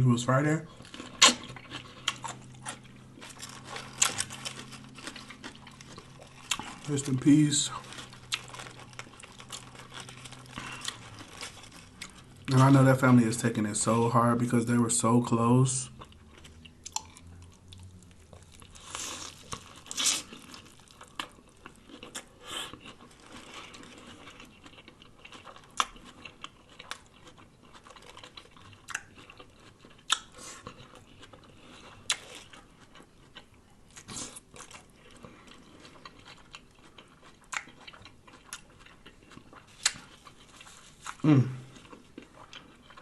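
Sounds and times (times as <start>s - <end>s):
chewing sandwich: 0.7s - 14.0s, 15.8s - 43.0s
sharp lettuce crunches: 0.9s - 12.8s, 18.5s - 24.4s, 39.7s - 41.5s.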